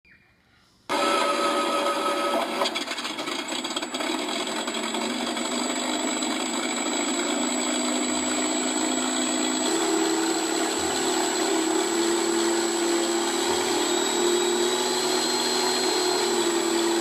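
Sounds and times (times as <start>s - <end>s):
aircraft engine running: 2.0s - 17.0s
thin high whine: 7.1s - 17.0s.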